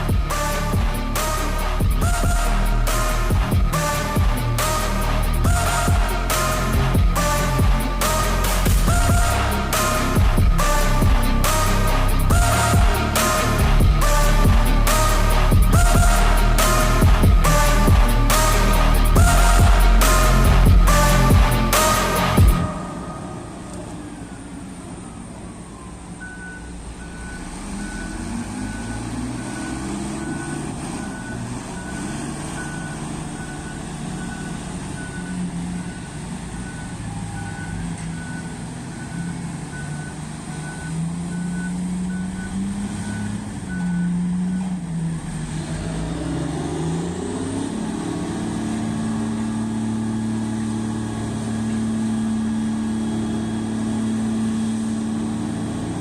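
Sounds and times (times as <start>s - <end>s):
back-up alarm beeping: 0.0s - 44.7s
diesel engine revving: 0.0s - 56.0s.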